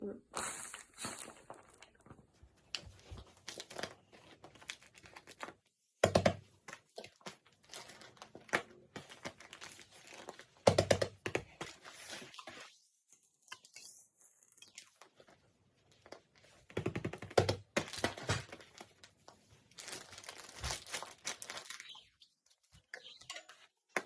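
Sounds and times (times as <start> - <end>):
paper crinkling: 0.4 - 5.7, 6.9 - 10.6, 17.9 - 23.7.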